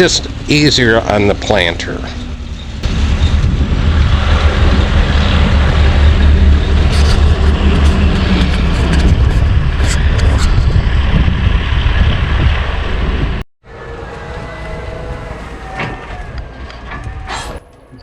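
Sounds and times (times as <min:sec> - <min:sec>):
farm machinery engine rumble: 0:00.0 - 0:13.4.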